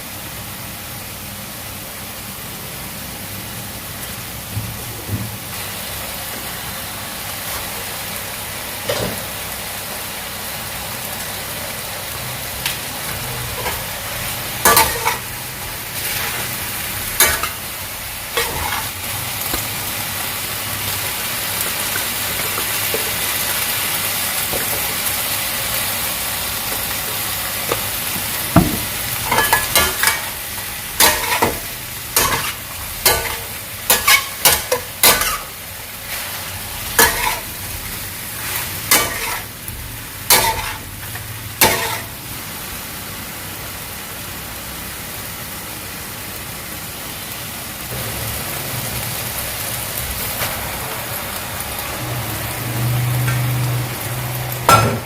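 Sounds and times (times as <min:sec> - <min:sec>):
food sizzling in a pan: 0:00.0 - 0:55.0
utensil scraping a pan: 0:18.4 - 0:19.0, 0:38.4 - 0:39.5.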